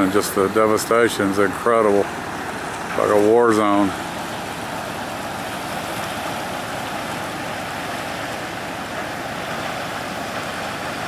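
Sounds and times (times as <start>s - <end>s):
river flowing: 0.0s - 11.0s.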